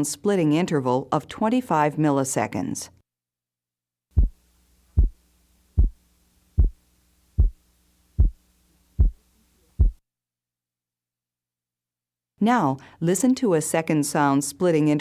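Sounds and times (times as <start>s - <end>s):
heartbeat: 4.1s - 4.4s, 5.0s - 5.2s, 5.8s - 6.0s, 6.6s - 6.8s, 7.4s - 7.6s, 8.2s - 8.4s, 9.0s - 10.0s.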